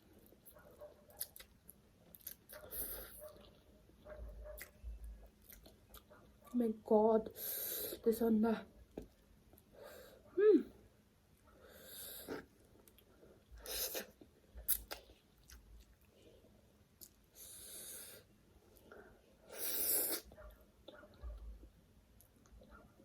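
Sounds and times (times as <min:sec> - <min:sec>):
soft chewing: 0:00.0 - 0:06.6, 0:08.7 - 0:10.4, 0:11.3 - 0:17.4, 0:18.1 - 0:23.0
person humming: 0:10.4 - 0:10.8
person slurping noodles: 0:19.5 - 0:20.3.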